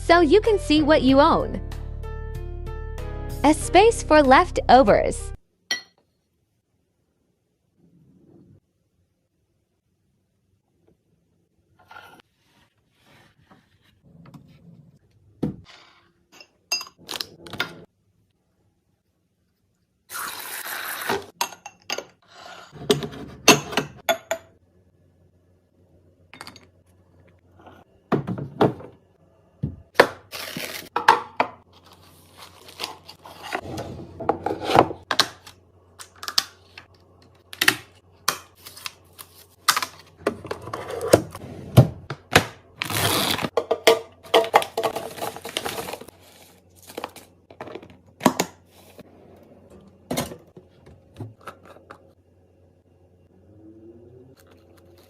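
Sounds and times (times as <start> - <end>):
packaging rustling and tearing: 30.3 - 30.9, 31.8 - 33.5, 42.8 - 43.5, 44.9 - 47.4.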